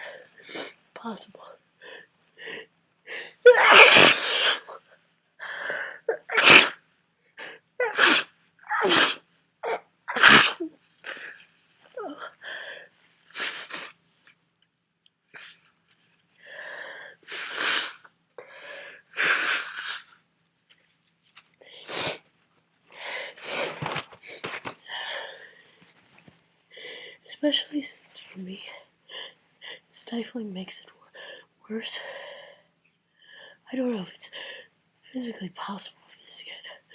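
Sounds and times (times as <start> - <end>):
person sneezing loudly: 3.4 - 4.8, 6.1 - 6.8, 7.8 - 11.2.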